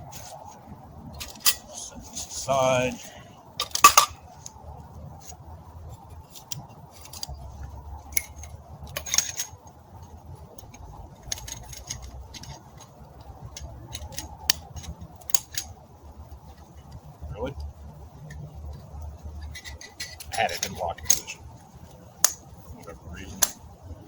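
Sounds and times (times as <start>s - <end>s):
metal cooking gear clinking: 3.6s - 4.2s, 8.1s - 9.6s, 11.2s - 15.7s
steady low rumble: 20.4s - 24.0s.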